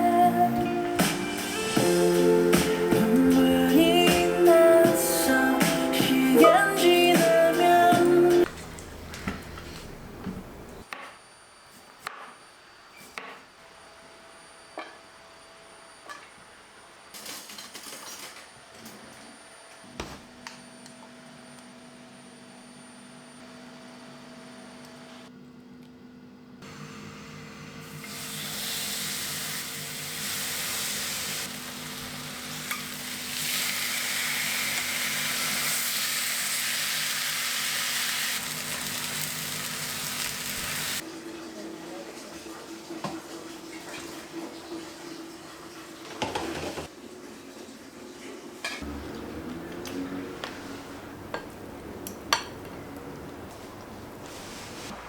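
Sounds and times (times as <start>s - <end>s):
food sizzling in a pan: 27.9s - 41.0s
kitchen clicks and knocks: 46.1s - 46.9s.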